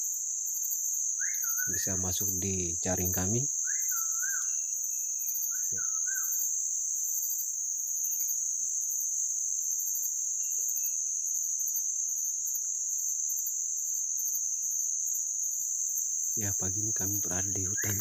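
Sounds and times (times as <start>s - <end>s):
crickets chirping: 0.0s - 18.0s.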